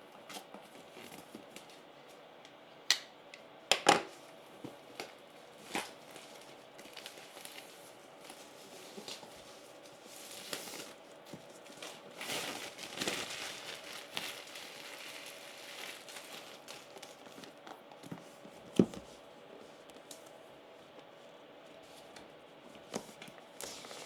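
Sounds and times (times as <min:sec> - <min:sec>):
packaging rustling and crinkling: 0:04.6 - 0:19.2, 0:22.8 - 0:24.0.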